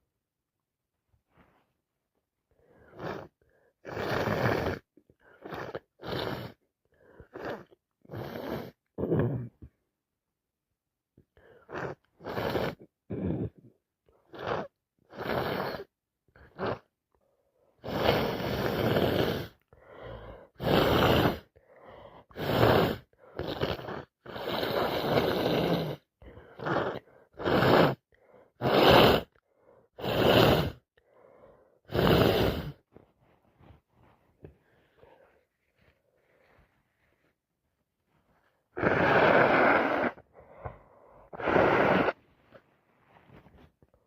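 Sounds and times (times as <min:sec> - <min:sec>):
person sniffing: 0:17.8 - 0:37.4, 0:38.4 - 0:43.8
person gasping wheezy breaths: 0:19.5 - 0:20.8, 0:21.4 - 0:23.4, 0:38.7 - 0:42.6.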